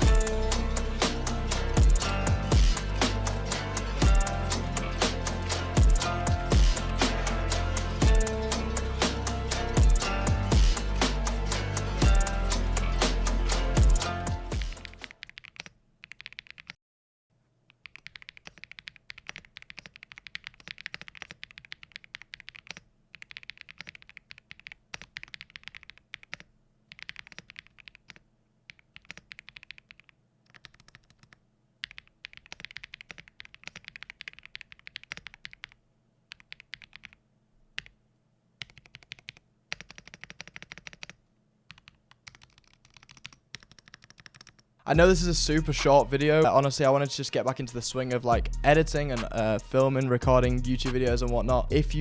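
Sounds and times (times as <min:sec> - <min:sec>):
mechanical keyboard typing: 0:14.0 - 0:16.8, 0:17.7 - 0:37.2, 0:37.8 - 0:38.0, 0:38.6 - 0:44.6.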